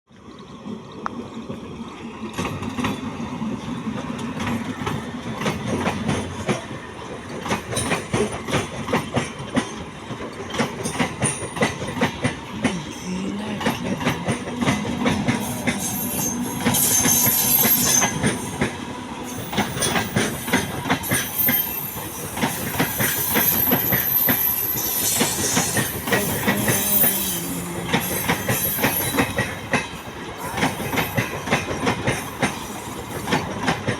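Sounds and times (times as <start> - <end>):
train wheels clattering: 2.3 - 33.9
high-pitched wheel squeal: 15.4 - 18.5, 21.1 - 29.4.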